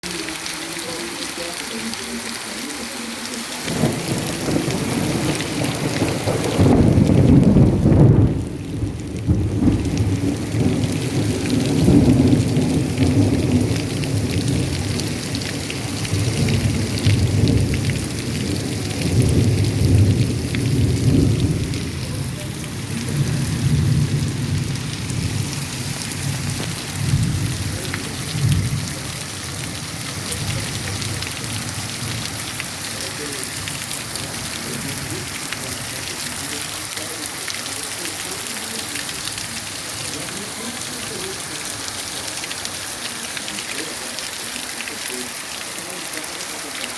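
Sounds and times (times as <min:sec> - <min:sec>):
heavy rain falling: 0:00.0 - 0:46.9
rolling thunder rumbling: 0:03.6 - 0:37.2.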